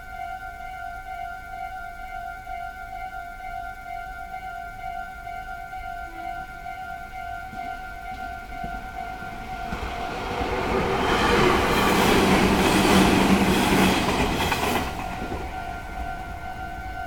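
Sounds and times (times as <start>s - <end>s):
crossing warning bell ringing: 0.0s - 17.0s
electric train passing: 0.0s - 17.0s
wheels clacking over rail joints: 7.5s - 17.0s.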